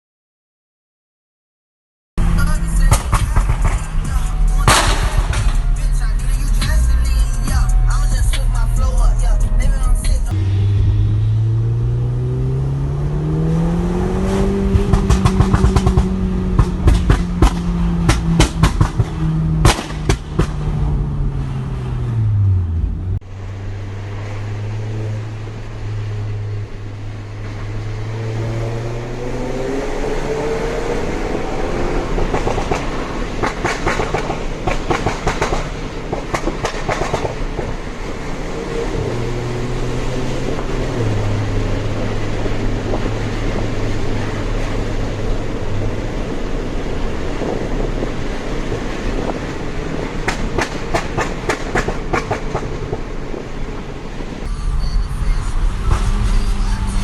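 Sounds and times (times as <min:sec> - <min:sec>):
car engine revving: 0:02.2 - 0:57.0
exhaust pops and bangs: 0:02.8 - 0:05.7, 0:14.3 - 0:20.8.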